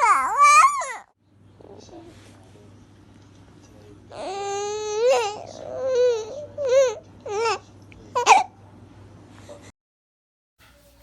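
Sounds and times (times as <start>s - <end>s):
baby crying: 0.0s - 1.1s, 4.1s - 7.6s.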